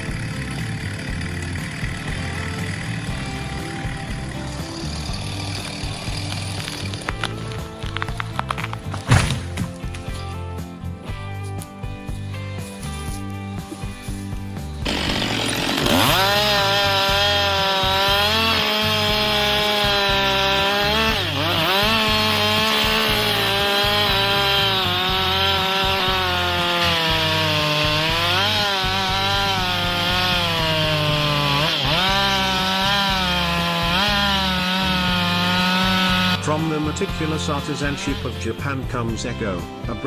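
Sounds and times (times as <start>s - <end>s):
chainsaw cutting wood: 0.0s - 10.4s, 12.6s - 40.0s.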